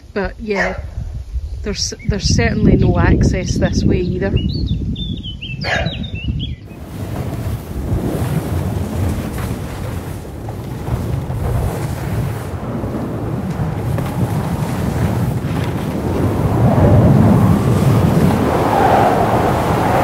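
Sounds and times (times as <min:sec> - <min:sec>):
wind buffeting microphone: 0:00.0 - 0:20.0
bird chirping: 0:03.6 - 0:06.8.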